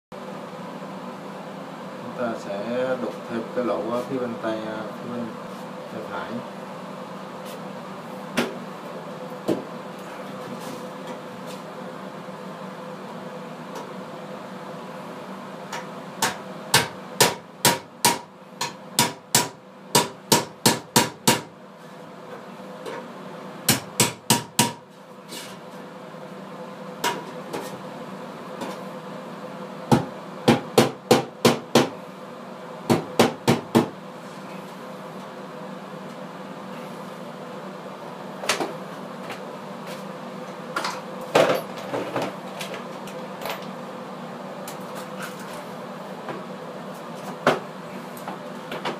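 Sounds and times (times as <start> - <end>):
hammer striking chisel: 16.2 - 21.5.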